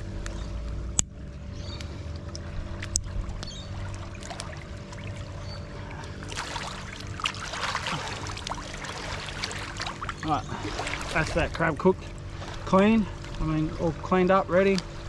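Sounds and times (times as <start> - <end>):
steady low hum: 0.0 - 15.0
water pouring and splashing: 2.9 - 14.1.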